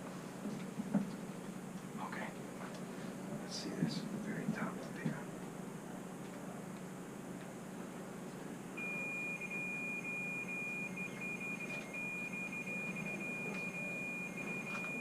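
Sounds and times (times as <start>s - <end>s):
faint steady hum: 0.0s - 15.0s
high electronic alarm tone: 8.8s - 15.0s.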